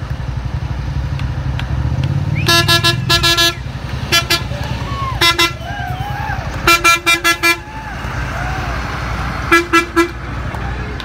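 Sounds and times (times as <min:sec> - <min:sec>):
truck engines rumbling: 0:00.0 - 0:11.0
fire engine horns tooting: 0:02.4 - 0:11.0.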